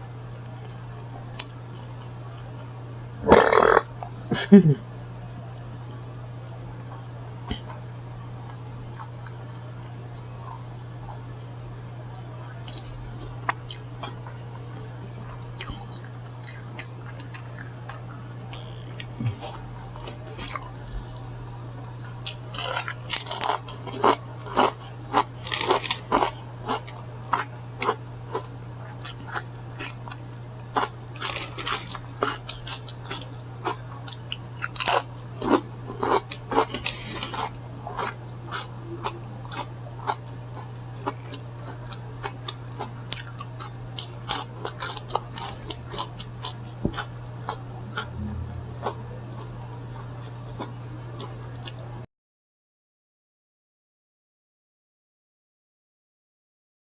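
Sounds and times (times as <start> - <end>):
low hum: 0.0 - 52.0
close chewing with wet mouth clicks: 22.3 - 50.3.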